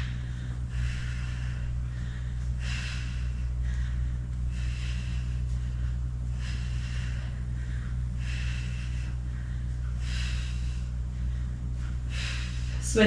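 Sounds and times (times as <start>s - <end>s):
low hum: 0.0s - 13.0s
woman breathing hard: 0.0s - 13.0s.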